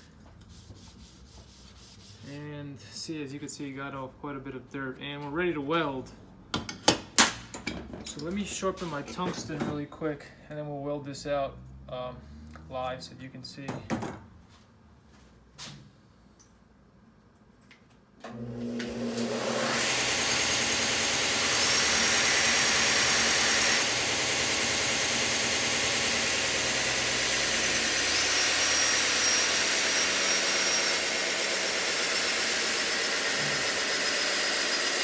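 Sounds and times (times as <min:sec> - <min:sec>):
electric grinder motor running: 0:18.3 - 0:35.0.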